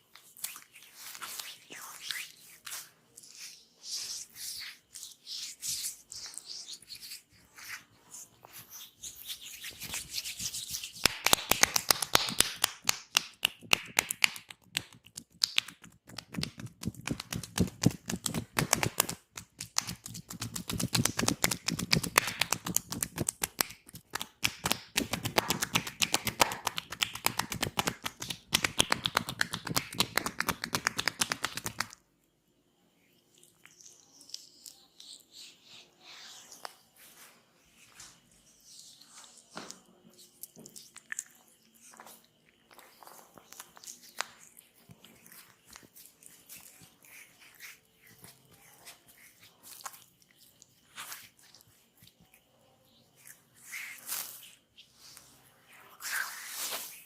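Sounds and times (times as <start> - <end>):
percussive massage tapping: 9.8 - 32.0.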